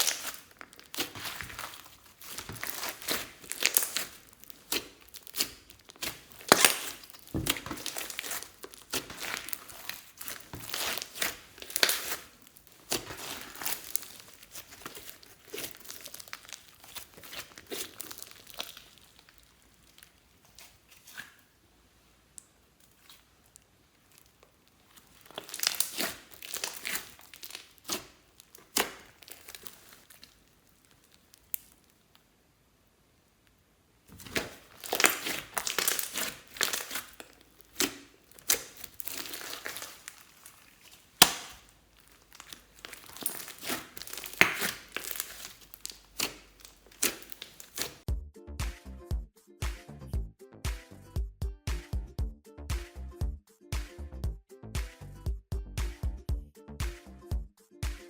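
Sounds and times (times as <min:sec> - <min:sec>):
slime crackling and popping: 0:00.0 - 0:21.6, 0:22.3 - 0:32.4, 0:33.4 - 0:48.1.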